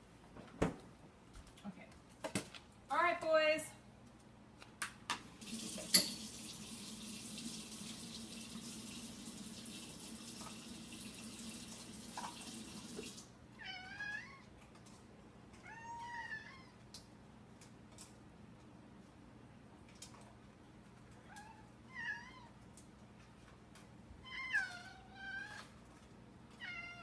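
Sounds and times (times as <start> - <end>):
water tap running: 5.4 - 13.3
cat meowing: 13.6 - 14.5, 15.6 - 16.8, 21.2 - 22.6, 24.2 - 25.8, 26.5 - 27.0.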